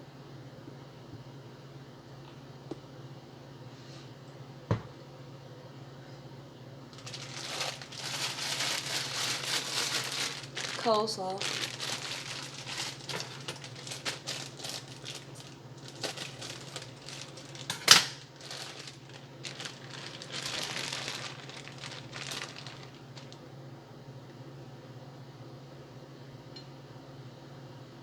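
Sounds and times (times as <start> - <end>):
food packaging rustling: 6.9 - 23.4.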